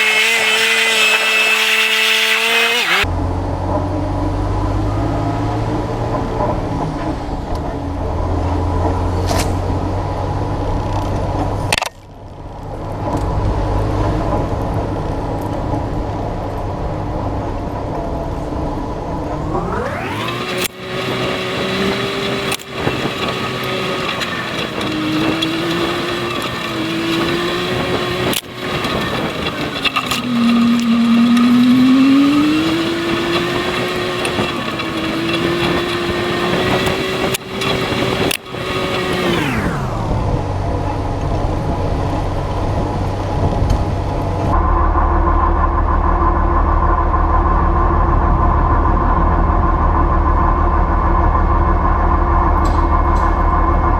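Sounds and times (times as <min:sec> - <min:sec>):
machine whine: 0:00.0 - 0:03.1, 0:18.6 - 0:41.6
combine harvester engine: 0:00.0 - 0:05.2, 0:17.4 - 0:53.9
low steady drone: 0:39.8 - 0:53.9.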